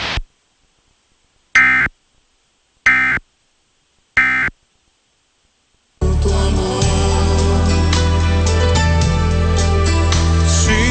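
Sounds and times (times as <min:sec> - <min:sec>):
buzzy digital data tone bursts: 0:01.6 - 0:02.0, 0:02.8 - 0:03.3, 0:04.2 - 0:04.6.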